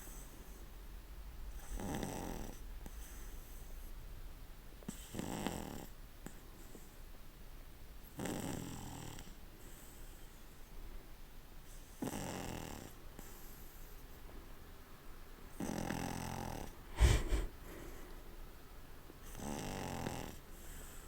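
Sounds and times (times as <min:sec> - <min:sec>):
quiet dog breathing: 0:00.0 - 0:04.1, 0:08.1 - 0:11.0, 0:11.6 - 0:14.6, 0:15.5 - 0:21.0
dog snoring: 0:01.5 - 0:03.8, 0:04.9 - 0:06.9, 0:08.0 - 0:10.4, 0:11.7 - 0:14.0, 0:15.5 - 0:18.0, 0:19.2 - 0:21.0.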